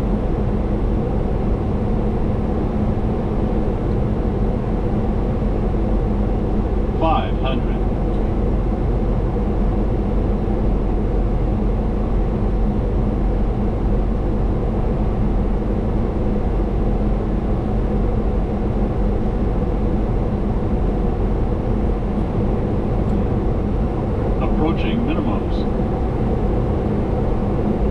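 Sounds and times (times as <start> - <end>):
low hum of jet engines: 0.0 - 27.9.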